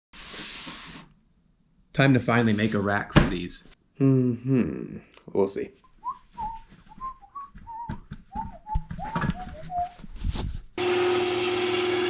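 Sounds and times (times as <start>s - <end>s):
person whistling a tune: 6.0s - 10.1s
electric power tool running: 10.8s - 12.0s.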